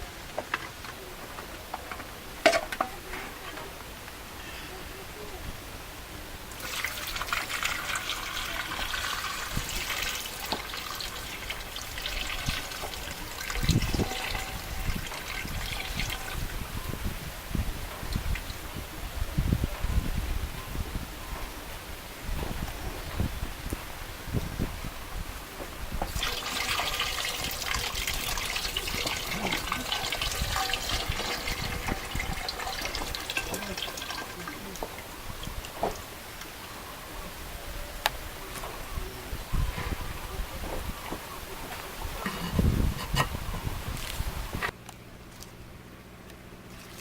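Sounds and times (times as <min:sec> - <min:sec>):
water trickling and splashing: 0:06.5 - 0:18.9, 0:25.9 - 0:36.9, 0:46.6 - 0:47.0.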